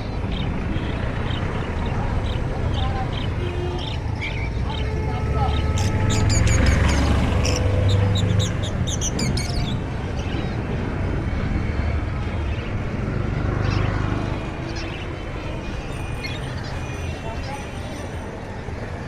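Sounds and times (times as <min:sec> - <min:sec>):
caged birds chirping: 0:00.0 - 0:19.0
market crowd noise: 0:00.0 - 0:19.0.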